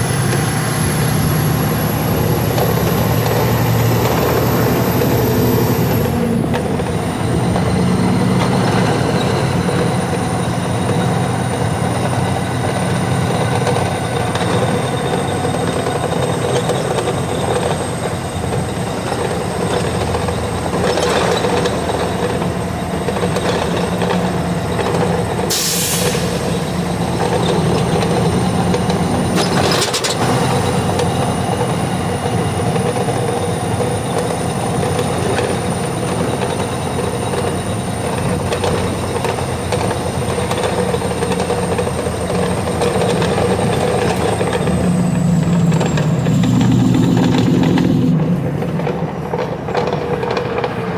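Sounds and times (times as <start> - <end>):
heavy vehicle engine rumble: 0.0 - 50.9
short air hisses: 25.5 - 26.5.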